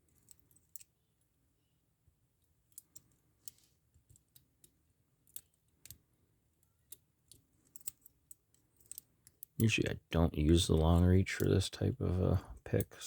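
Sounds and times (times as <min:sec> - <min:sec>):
metal lock picks clicking: 0:00.1 - 0:00.9, 0:06.6 - 0:09.6.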